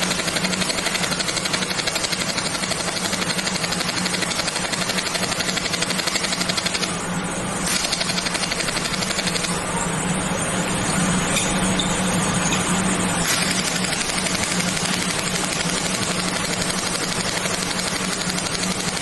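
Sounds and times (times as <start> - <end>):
laser welder fast ticking: 0.0 - 6.9, 7.7 - 9.6, 13.3 - 19.0.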